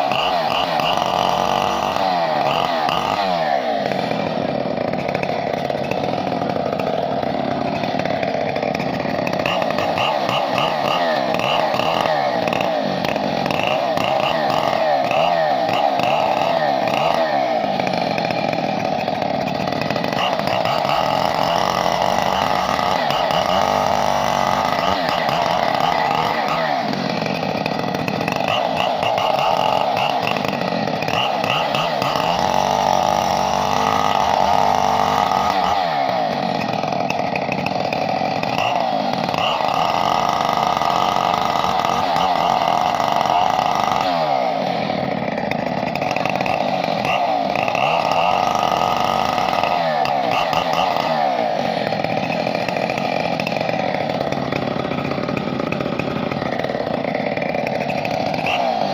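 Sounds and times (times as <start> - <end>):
chainsaw running hard: 0.0 - 58.9.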